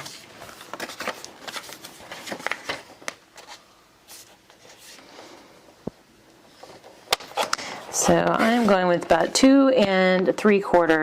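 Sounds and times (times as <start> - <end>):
paper rustling: 0.0 - 5.0.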